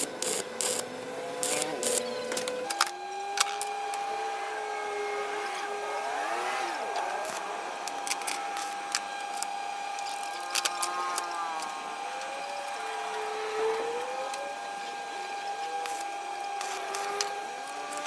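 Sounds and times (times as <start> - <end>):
electric motor whine: 0.0 - 18.0.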